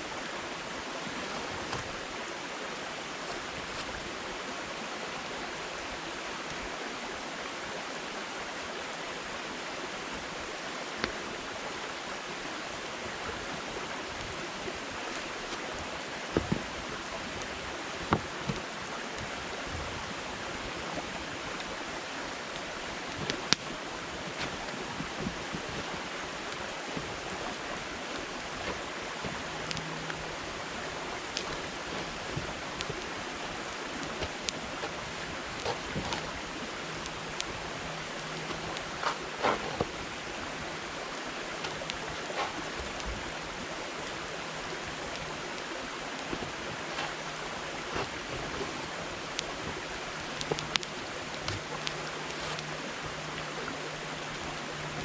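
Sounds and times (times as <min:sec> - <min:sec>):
campfire hissing and crackling: 0:00.0 - 0:55.0.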